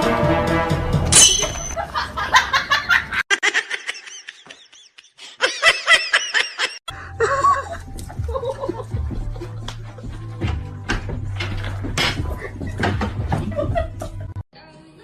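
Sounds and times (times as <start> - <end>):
background music: 0.0 - 1.8, 6.9 - 15.0
high-pitched laughing: 1.8 - 9.5.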